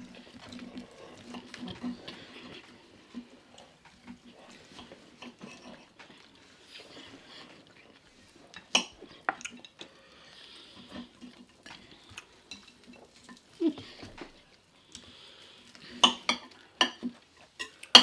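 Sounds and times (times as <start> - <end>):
cutlery and dishes clinking: 8.6 - 9.8, 12.1 - 13.5, 15.9 - 18.0.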